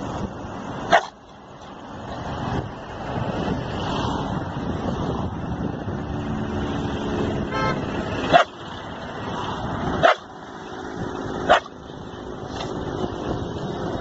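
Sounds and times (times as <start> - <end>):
dog barking: 0.9 - 1.2, 8.3 - 8.5, 10.0 - 10.3, 11.4 - 11.7.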